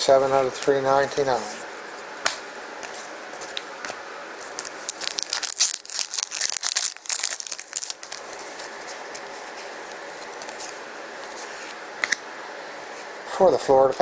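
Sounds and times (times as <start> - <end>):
foil wrapper crinkling and tearing: 4.4 - 10.8.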